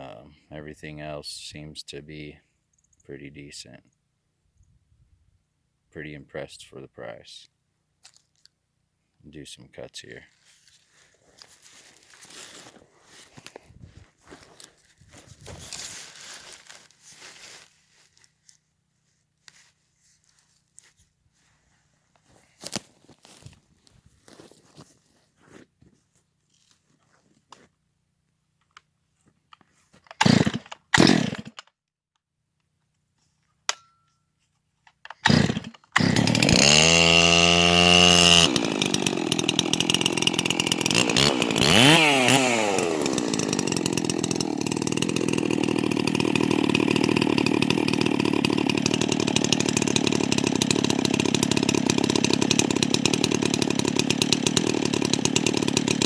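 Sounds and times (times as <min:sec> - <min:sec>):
chainsaw starting and revving: 0:30.1 - 0:31.6, 0:35.2 - 0:56.0.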